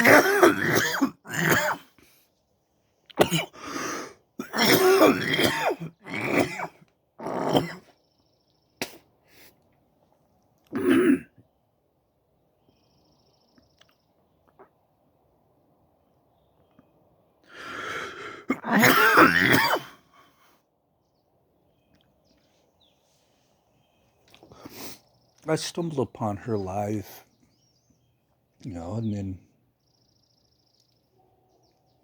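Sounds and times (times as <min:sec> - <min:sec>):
man clearing throat: 0:00.0 - 0:01.9, 0:03.2 - 0:03.6, 0:04.4 - 0:07.9, 0:10.7 - 0:11.4, 0:18.4 - 0:20.0
man coughing: 0:00.0 - 0:01.9, 0:03.2 - 0:03.8, 0:04.4 - 0:06.8, 0:10.7 - 0:11.4, 0:18.4 - 0:20.0.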